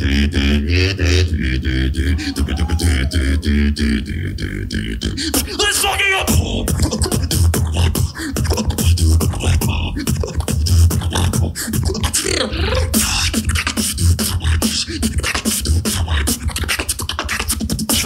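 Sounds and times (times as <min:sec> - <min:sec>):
rising sliding vocal sound: 0:00.0 - 0:14.2
deep pulsing bass: 0:00.0 - 0:16.6
person beatboxing: 0:00.0 - 0:18.0.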